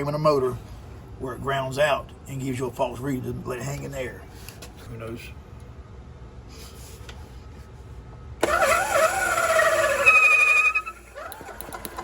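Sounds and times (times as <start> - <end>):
engine cranking on starter: 8.4 - 12.0.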